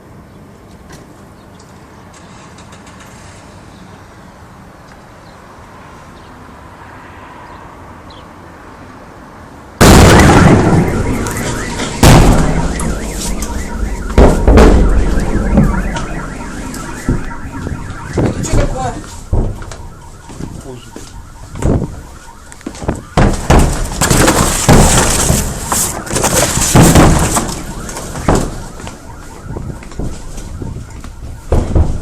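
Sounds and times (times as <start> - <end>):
loud booms: 9.8 - 20.3, 22.9 - 28.8
rumbling: 9.8 - 20.5.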